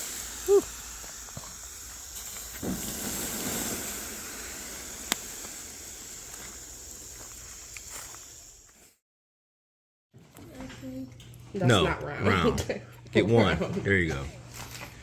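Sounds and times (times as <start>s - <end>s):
fire popping sharply: 0.0s - 8.7s
bonfire hissing: 0.0s - 9.0s.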